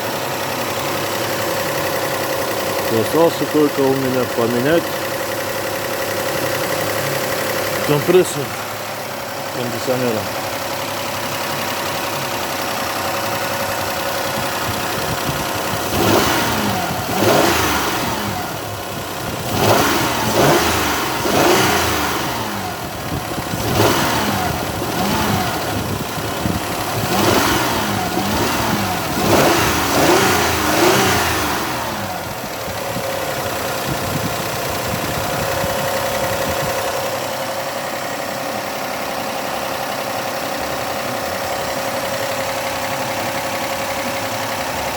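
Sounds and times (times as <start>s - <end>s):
car engine idling and revving: 0.0s - 44.9s.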